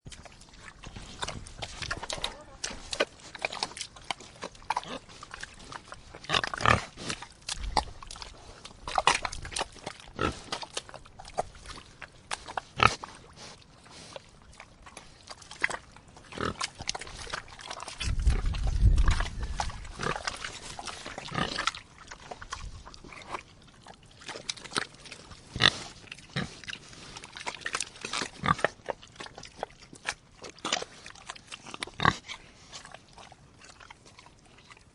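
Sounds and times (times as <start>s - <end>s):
wet clicks in mud: 0.1s - 5.6s, 7.1s - 12.6s
pigs grunting: 0.2s - 34.9s
low rumble: 18.0s - 20.1s.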